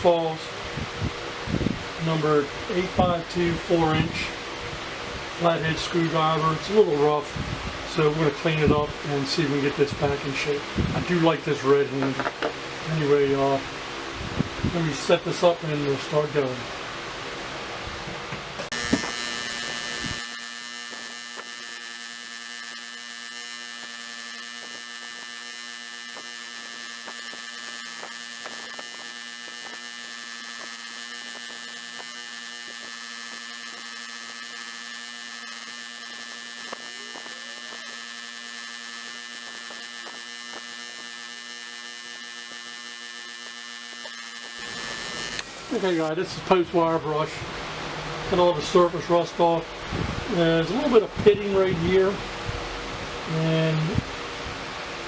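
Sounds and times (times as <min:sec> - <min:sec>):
wire brush wheel motor hum: 0:18.7 - 0:46.1.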